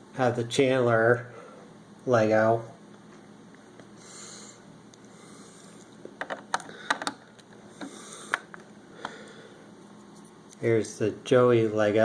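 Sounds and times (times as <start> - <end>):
soft breath: 4.0 - 5.9, 7.7 - 9.7.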